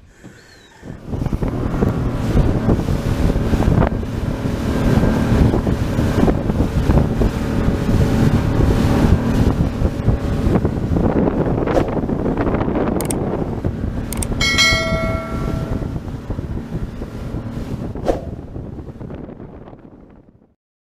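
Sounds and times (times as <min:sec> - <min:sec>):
wind buffeting microphone: 0:00.0 - 0:20.5
clicks: 0:13.0 - 0:13.2, 0:14.2 - 0:15.7
short ringing tone: 0:14.2 - 0:16.1.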